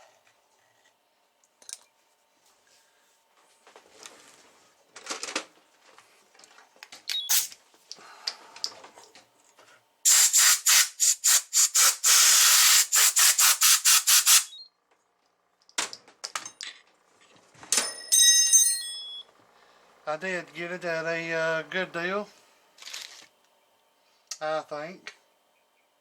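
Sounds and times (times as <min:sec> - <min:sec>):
loud hissing spray: 0:10.1 - 0:14.5.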